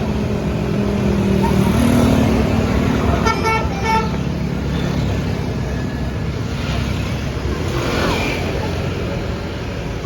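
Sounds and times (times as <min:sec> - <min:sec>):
passing traffic: 0:00.0 - 0:10.0
vehicle horn toots: 0:03.2 - 0:04.3.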